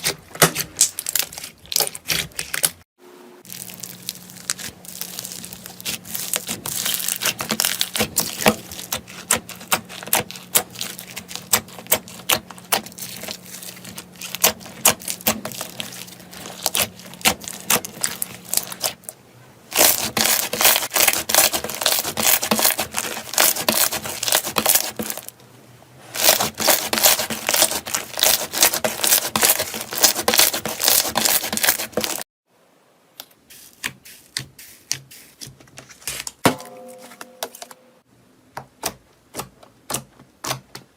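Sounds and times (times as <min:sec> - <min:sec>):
slime crackling when squeezed: 0:03.5 - 0:08.9.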